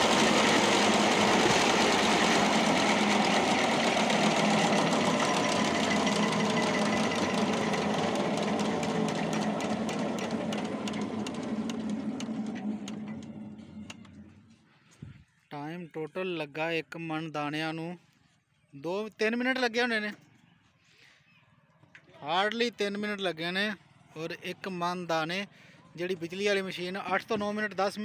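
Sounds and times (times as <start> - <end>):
mill and engine clattering: 0.0 - 14.6.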